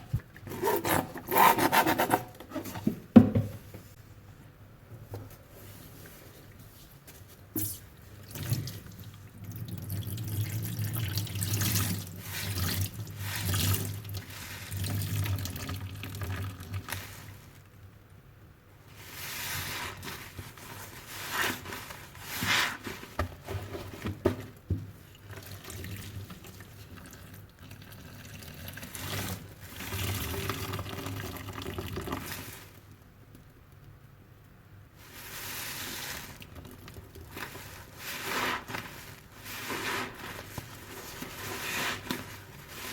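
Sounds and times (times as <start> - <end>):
sponge squeezed under running water: 7.6 - 17.6, 35.0 - 42.9.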